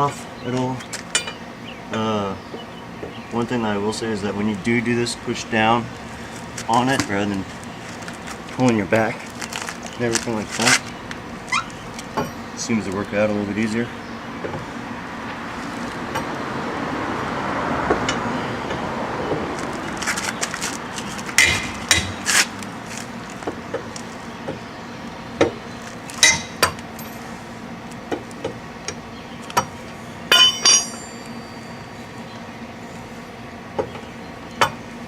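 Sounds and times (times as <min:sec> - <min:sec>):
lug wrench clinking on nuts: 0:01.1 - 0:01.4, 0:26.2 - 0:27.3, 0:29.5 - 0:31.9.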